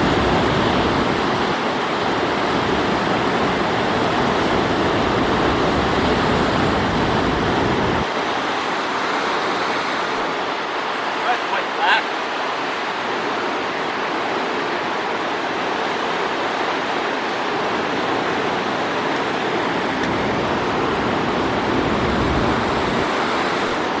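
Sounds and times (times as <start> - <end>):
rushing water: 0.0 - 24.0.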